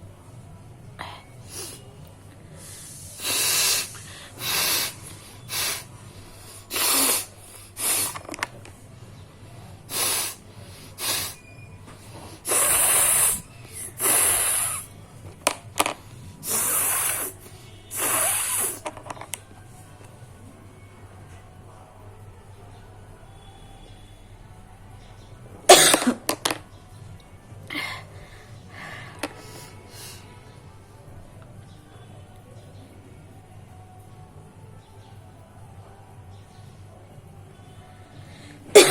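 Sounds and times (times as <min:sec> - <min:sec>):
person blowing nose: 0:02.6 - 0:08.4, 0:09.9 - 0:11.4, 0:12.2 - 0:14.9, 0:16.4 - 0:19.0.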